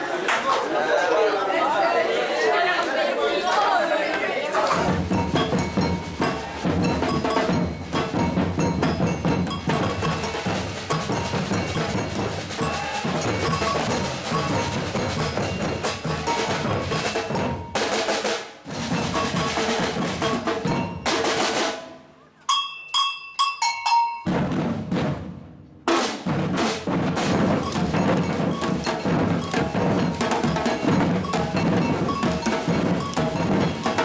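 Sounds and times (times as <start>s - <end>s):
drum ensemble playing: 4.5s - 22.0s, 23.4s - 34.0s
high ringing strikes: 22.5s - 24.4s.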